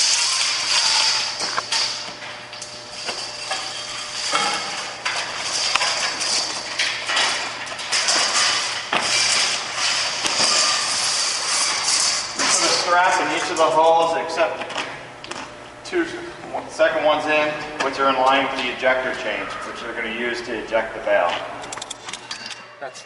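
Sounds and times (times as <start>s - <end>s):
strap scraping and rustling: 0.0s - 14.1s.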